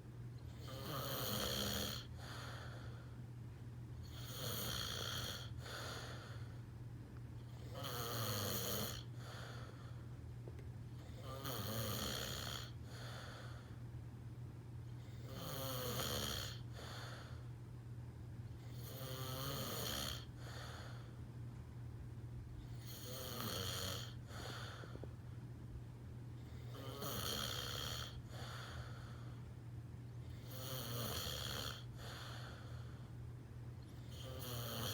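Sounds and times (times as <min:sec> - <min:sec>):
man snoring: 0:00.6 - 0:02.7, 0:04.1 - 0:06.3, 0:07.6 - 0:09.5, 0:11.1 - 0:13.6, 0:15.2 - 0:17.3, 0:18.7 - 0:21.0, 0:22.8 - 0:25.0, 0:26.6 - 0:29.0, 0:30.4 - 0:32.8, 0:34.1 - 0:34.9.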